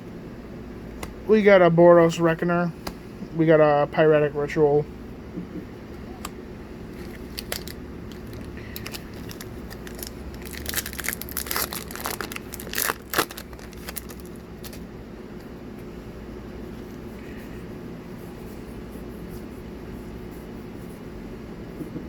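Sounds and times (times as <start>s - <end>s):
cards being handled: 6.2s - 14.8s
plastic wrapper crinkling and tearing: 6.9s - 14.8s.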